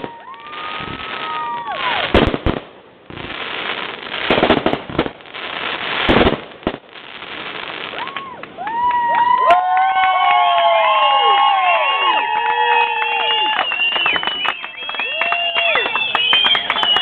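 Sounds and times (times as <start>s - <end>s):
firework booms: 0.0s - 8.2s
firework crackling: 0.0s - 9.3s.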